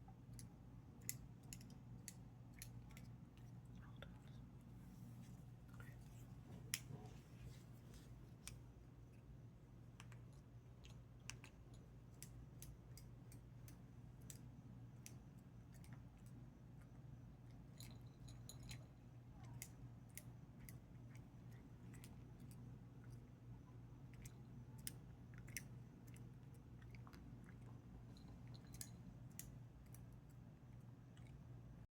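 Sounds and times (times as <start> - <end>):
steady low hum: 0.0 - 31.9
chewing: 24.0 - 31.8.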